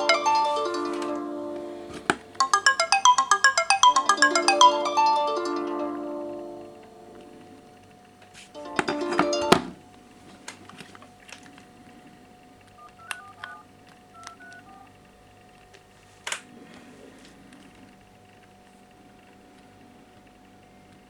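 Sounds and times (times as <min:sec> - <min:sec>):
phone keypad touch tones: 0:12.8 - 0:14.9.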